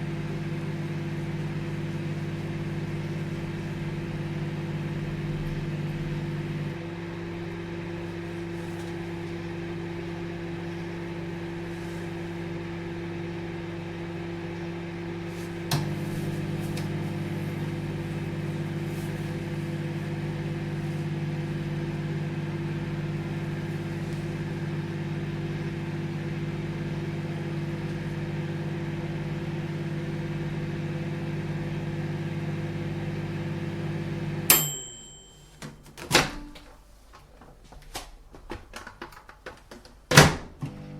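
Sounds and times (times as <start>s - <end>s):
microwave oven humming: 0.0s - 38.9s, 40.1s - 40.9s
microwave click: 15.7s - 16.0s, 34.5s - 36.7s
brief high tone: 34.5s - 35.6s.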